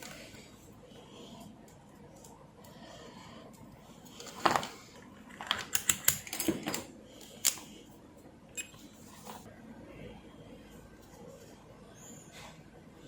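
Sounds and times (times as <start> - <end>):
hand tools clicking and tapping: 5.4 - 7.6.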